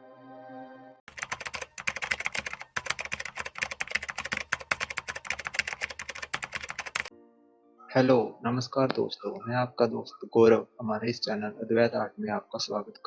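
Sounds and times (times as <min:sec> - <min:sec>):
ambient music chord: 0:00.0 - 0:01.0, 0:07.1 - 0:08.5
rapid key typing clicks: 0:01.1 - 0:07.1.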